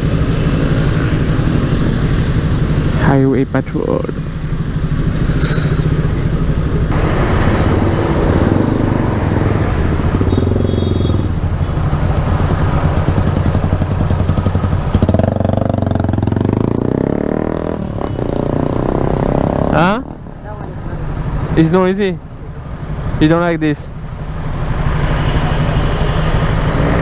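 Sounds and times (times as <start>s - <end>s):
road noise: 0.0s - 27.0s
motorcycle engine running: 3.8s - 21.4s.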